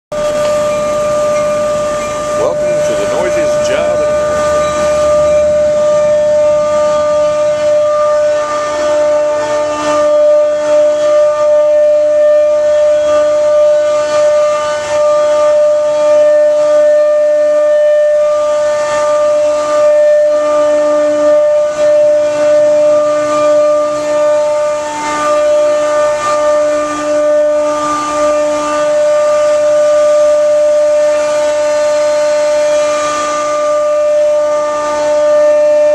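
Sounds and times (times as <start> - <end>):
machinery whine: 0.1 - 35.9.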